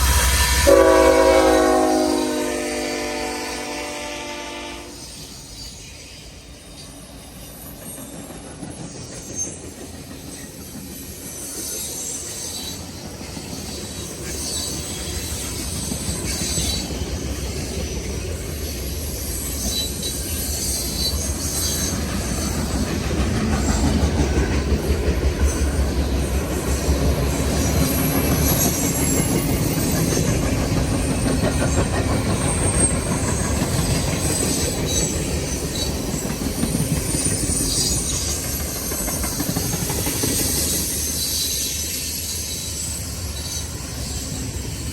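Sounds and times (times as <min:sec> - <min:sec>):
wheels clicking over rail joints: 0:07.4 - 0:42.5
high wheel squeal: 0:27.4 - 0:44.9.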